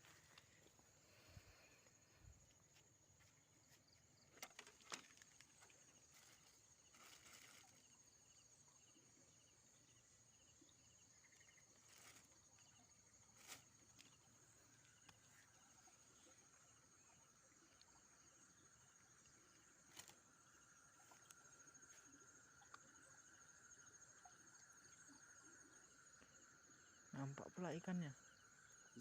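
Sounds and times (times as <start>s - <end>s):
night insects chirring: 0.0s - 29.0s.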